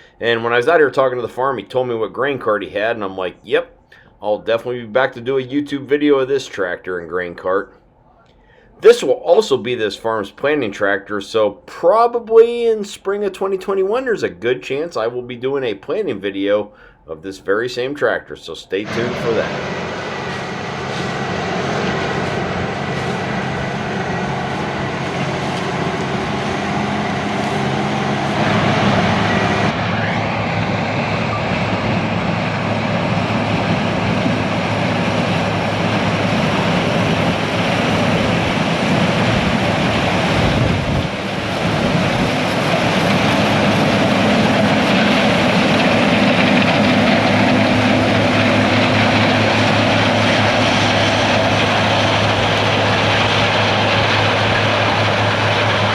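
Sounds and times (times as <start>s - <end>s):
diesel engines running: 0.0s - 0.8s, 18.8s - 55.9s.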